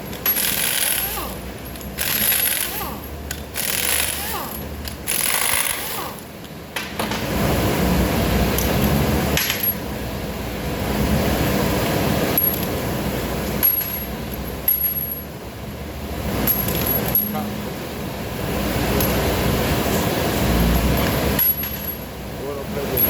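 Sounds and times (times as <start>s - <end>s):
metal tools clinking: 16.4s - 17.6s, 20.8s - 22.1s.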